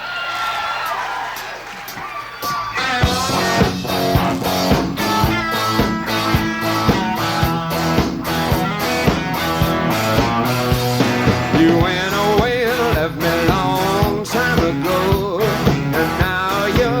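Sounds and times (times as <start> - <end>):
live rock band playing: 2.4 - 17.0.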